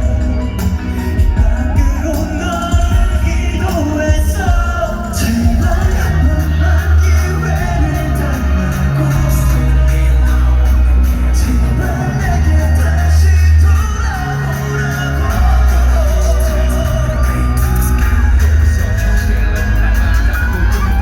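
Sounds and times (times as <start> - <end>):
band singing over backing track: 0.0 - 21.0
fans shouting: 0.0 - 21.0.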